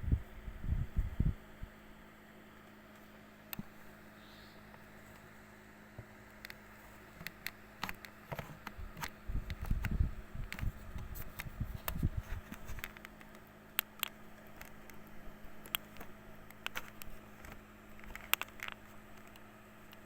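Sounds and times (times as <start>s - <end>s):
faint steady hum: 0.0s - 20.0s
light clicks and taps: 5.9s - 20.0s.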